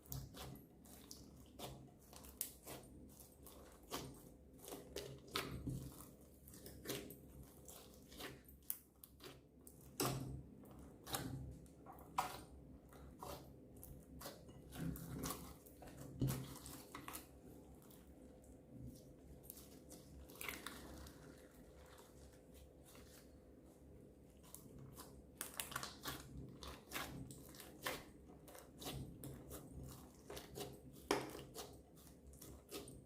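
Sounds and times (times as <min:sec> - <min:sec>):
slime squished by hand: 0:18.8 - 0:23.3, 0:24.4 - 0:33.0.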